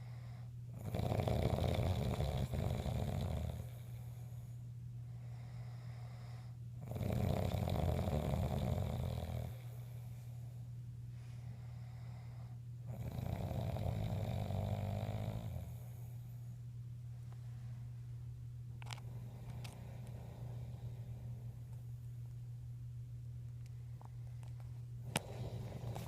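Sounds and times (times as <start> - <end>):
man snoring loudly: 0.8 - 4.0, 6.8 - 9.7, 12.9 - 16.0, 25.1 - 26.0.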